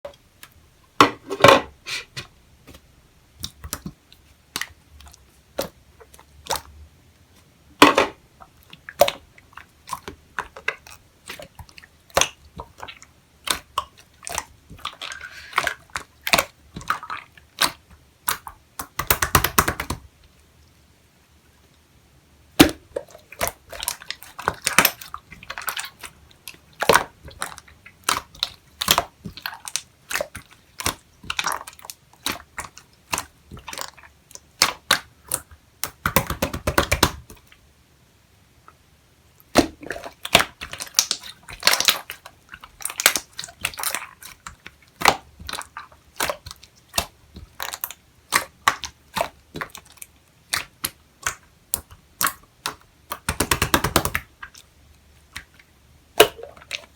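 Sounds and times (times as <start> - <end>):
slime popping and crackling: 39.5 - 54.6, 56.2 - 56.9.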